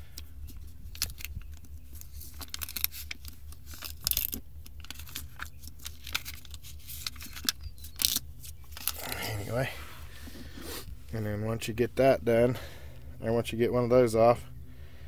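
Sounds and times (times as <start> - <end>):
rubber strip peeling and tearing: 2.0 - 9.1.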